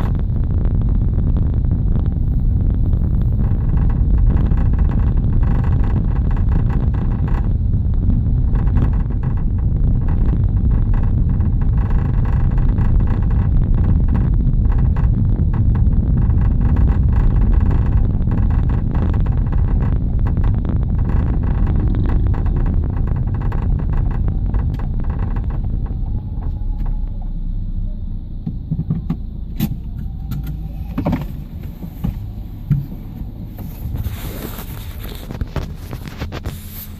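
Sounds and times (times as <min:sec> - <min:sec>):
car engine rumble: 0:00.0 - 0:36.9
rapid rattling clicking: 0:01.2 - 0:26.6.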